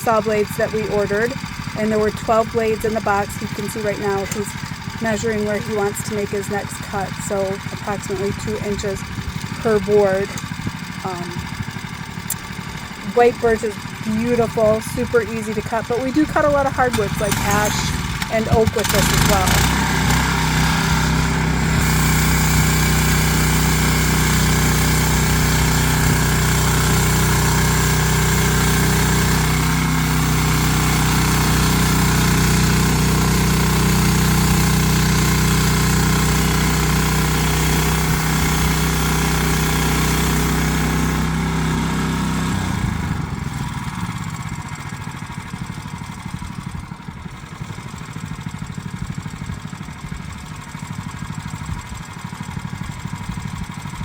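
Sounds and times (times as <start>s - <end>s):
small gasoline engine running: 0.0s - 54.0s
band saw blade cutting log: 16.4s - 42.9s.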